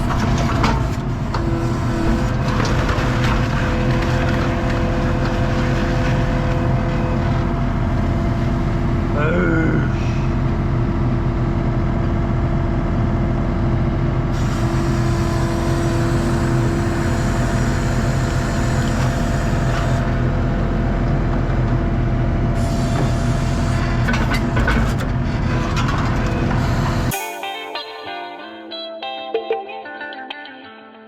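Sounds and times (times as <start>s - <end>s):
steady whine: 0.0s - 15.6s
diesel engine running: 0.0s - 27.2s.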